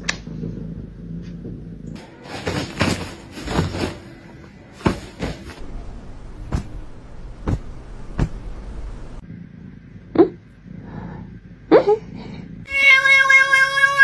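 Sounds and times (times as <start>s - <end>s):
rustling clatter: 1.2s - 9.2s
sharp knocks: 4.8s - 8.9s.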